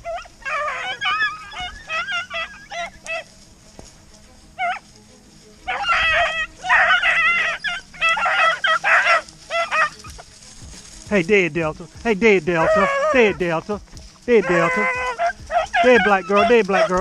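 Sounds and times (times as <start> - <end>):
dogs barking and baying: 0.0 - 17.0.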